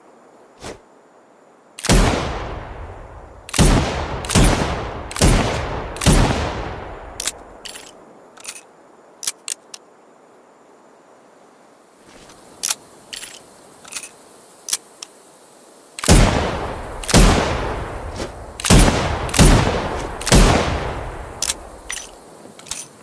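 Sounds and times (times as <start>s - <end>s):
sharp clicks: 7.2s - 9.8s, 18.6s - 20.4s, 21.3s - 23.0s.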